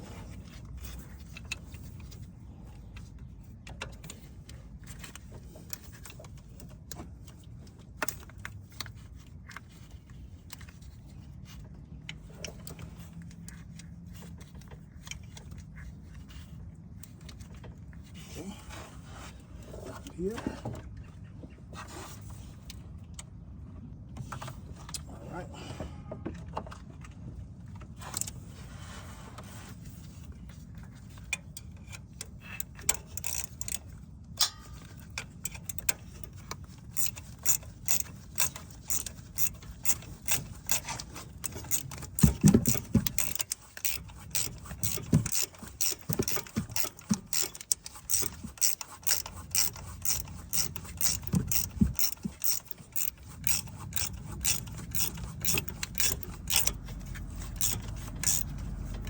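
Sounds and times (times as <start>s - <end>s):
ratchet wrench clicking: 31.6s - 59.0s.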